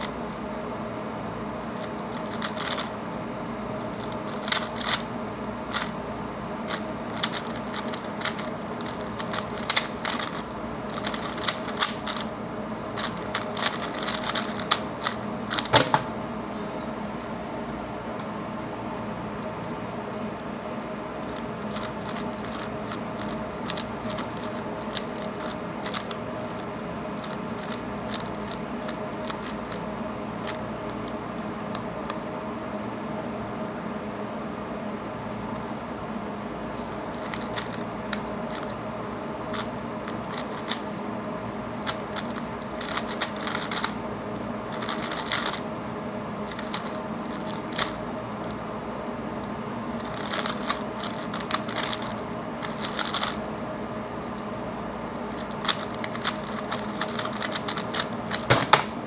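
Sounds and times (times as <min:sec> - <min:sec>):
steady background hum: 0:00.0 - 0:59.0
puzzle cube layers clicking: 0:02.1 - 0:02.9, 0:04.0 - 0:05.1, 0:06.7 - 0:12.3, 0:41.9 - 0:43.9, 0:50.0 - 0:53.4, 0:55.3 - 0:59.0.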